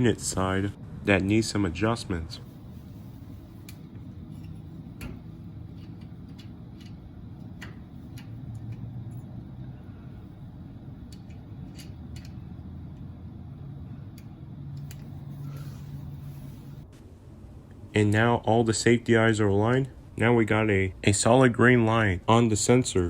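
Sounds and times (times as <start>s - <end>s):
steady low rumble: 0.0s - 23.0s
light clicks and ticks: 11.0s - 13.1s.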